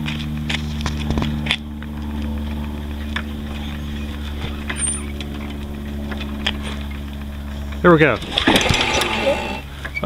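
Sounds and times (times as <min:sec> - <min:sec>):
engine humming: 0:00.0 - 0:10.0
recoil starter cord pull: 0:08.2 - 0:09.6.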